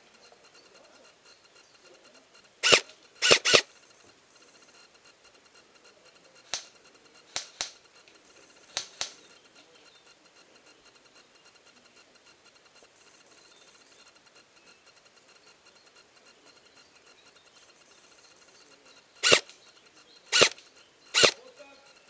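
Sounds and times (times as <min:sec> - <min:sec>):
airsoft gun shots: 0:02.6 - 0:03.7, 0:19.2 - 0:19.5, 0:20.3 - 0:20.6, 0:21.2 - 0:21.4.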